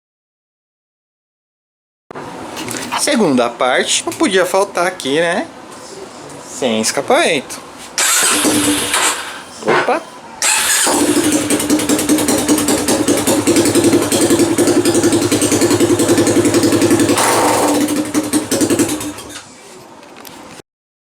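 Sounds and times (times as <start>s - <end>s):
motorcycle engine open exhaust: 8.0s - 9.6s, 10.4s - 19.4s.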